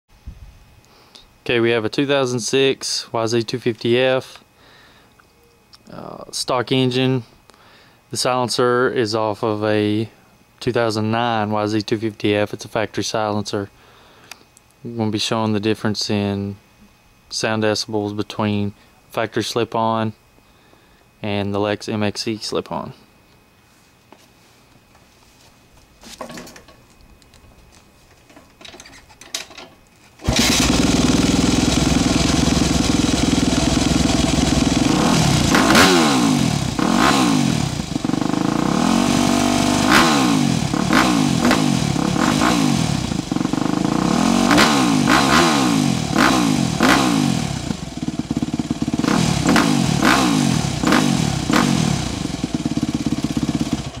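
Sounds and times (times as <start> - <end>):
motorcycle engine revving: 30.2 - 54.0.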